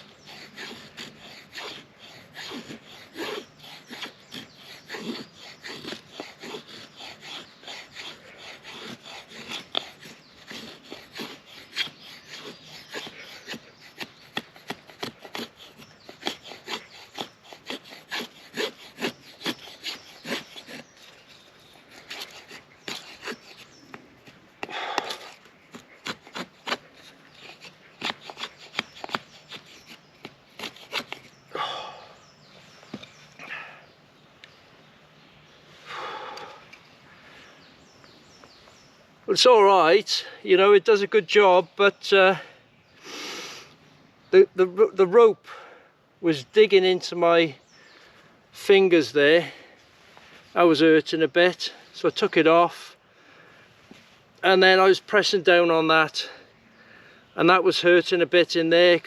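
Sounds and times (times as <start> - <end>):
knife scraping wooden stick: 0.0 - 31.4.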